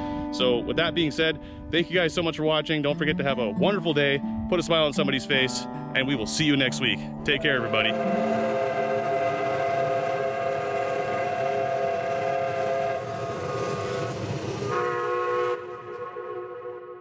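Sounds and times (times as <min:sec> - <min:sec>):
train whistle chord: 0:07.4 - 0:17.0.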